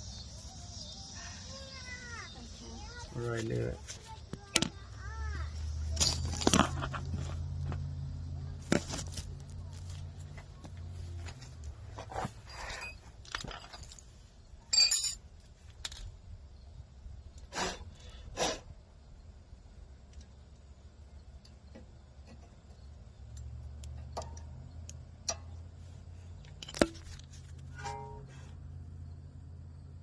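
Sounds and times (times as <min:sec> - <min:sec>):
brake pads clinking: 0:05.6 - 0:14.1, 0:14.7 - 0:15.2, 0:21.4 - 0:29.2.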